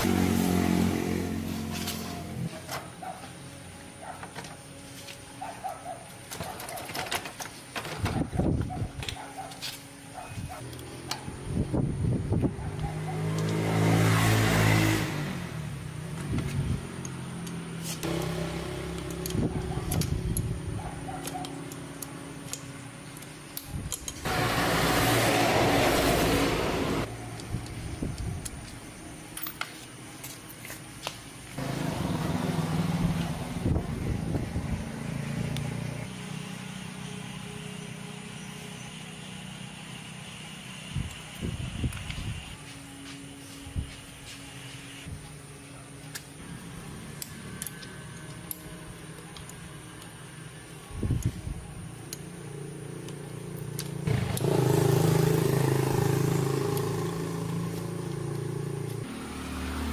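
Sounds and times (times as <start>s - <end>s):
metal clicks and clinks: 21.2s - 24.2s, 47.2s - 50.1s.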